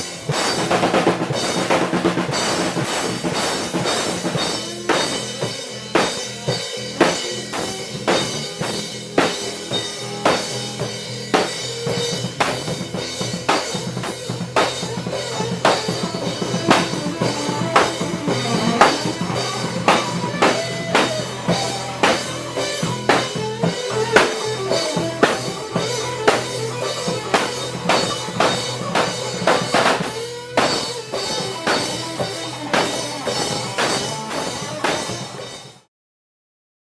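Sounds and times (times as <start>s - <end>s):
live band music: 0.0s - 35.6s
drum kit steady beat: 0.0s - 35.9s
wavering melody line: 16.1s - 20.4s.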